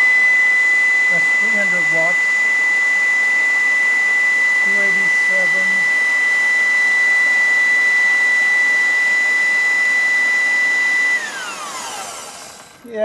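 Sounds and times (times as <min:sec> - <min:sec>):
vacuum cleaner running: 0:00.0 - 0:13.0.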